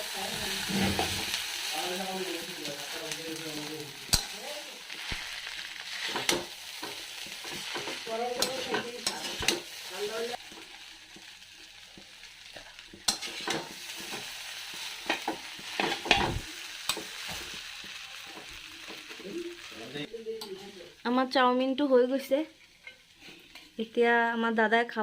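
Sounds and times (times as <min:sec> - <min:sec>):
noodles sizzling in oil: 0:00.0 - 0:25.0
spatula knocking and scraping pan: 0:06.0 - 0:09.7, 0:12.9 - 0:17.6.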